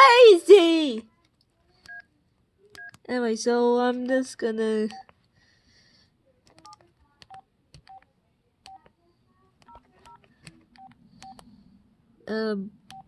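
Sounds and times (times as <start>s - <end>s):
phone keypad clicks and beeps: 1.8s - 2.1s, 2.8s - 3.0s, 4.9s - 5.1s.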